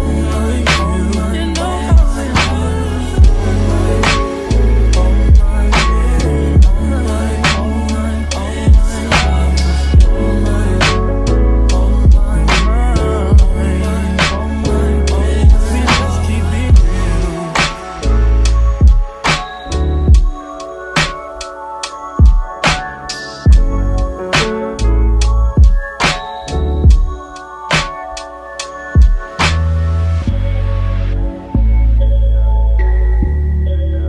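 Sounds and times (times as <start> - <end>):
drum-machine beat: 0.0 - 7.6, 8.7 - 9.4, 10.0 - 11.0, 12.1 - 13.7, 15.4 - 16.1, 16.7 - 29.6
sustained bass line: 0.0 - 19.0, 23.5 - 24.2, 24.8 - 25.7, 29.4 - 34.0
person singing: 0.0 - 28.2
deep bass drum hits: 3.2 - 5.9, 6.6 - 7.0, 10.0 - 11.0, 12.0 - 13.8, 15.4 - 16.1, 16.7 - 17.3
snare or clap strokes: 26.0 - 26.3, 29.4 - 29.8.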